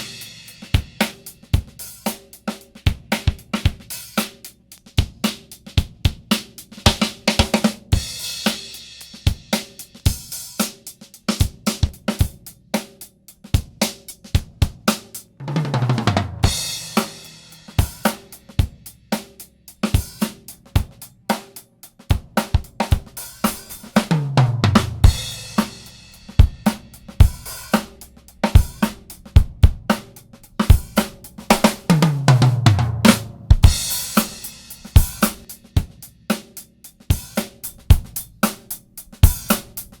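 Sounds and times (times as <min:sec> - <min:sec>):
drum kit groove: 0:00.0 - 0:40.0
tom fill: 0:15.4 - 0:18.3, 0:22.2 - 0:40.0.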